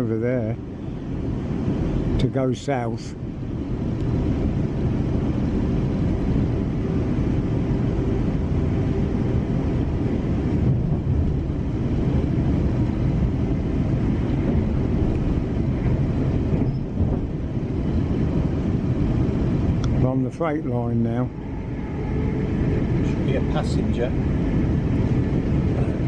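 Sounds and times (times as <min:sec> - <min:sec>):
train wheels rumbling on track: 0:00.0 - 0:26.0.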